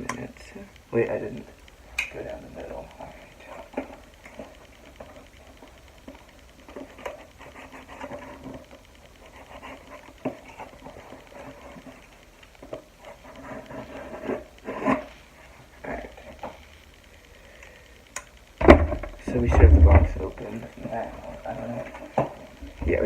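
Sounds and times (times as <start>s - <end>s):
sharp clicks: 0.0s - 7.9s, 16.6s - 20.8s.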